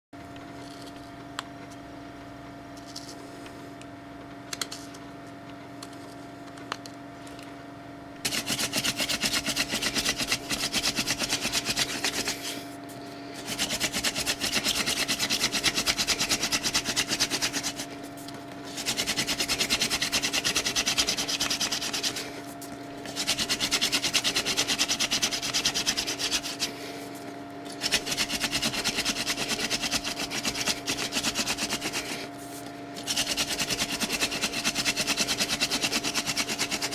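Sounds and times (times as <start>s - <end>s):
wooden drill rubbing rasp: 8.3s - 12.7s, 13.4s - 18.0s, 18.7s - 27.1s, 27.7s - 32.3s, 33.0s - 36.9s.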